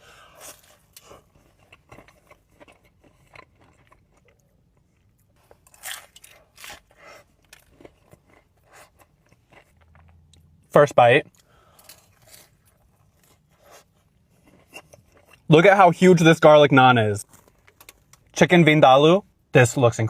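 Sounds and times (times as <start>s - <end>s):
pastry crunching: 0.1s - 10.5s, 11.3s - 15.6s, 17.2s - 18.4s
chewing: 0.4s - 10.5s.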